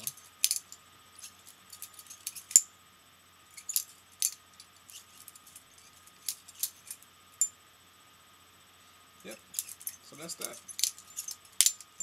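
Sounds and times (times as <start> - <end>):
butterfly knife clicking and clacking: 9.5 - 11.9.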